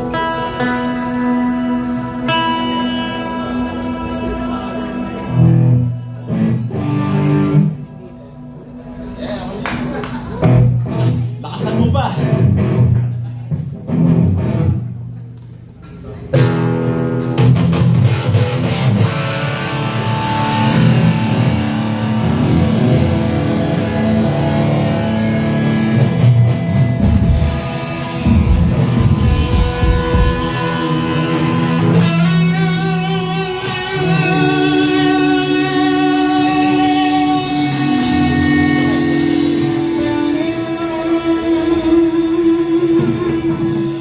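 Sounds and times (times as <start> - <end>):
electric guitar: 0.0 - 44.0
low bass notes: 16.4 - 44.0.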